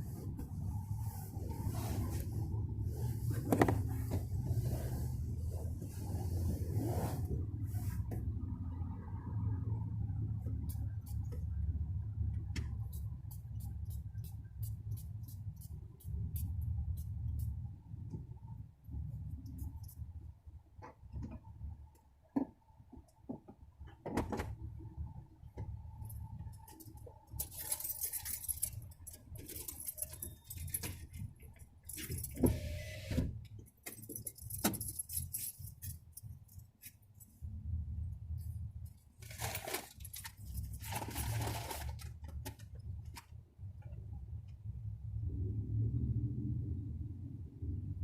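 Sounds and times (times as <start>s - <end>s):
steady low rumble: 0.0s - 20.8s
metallic jangling and clattering: 26.6s - 32.4s, 33.7s - 37.4s.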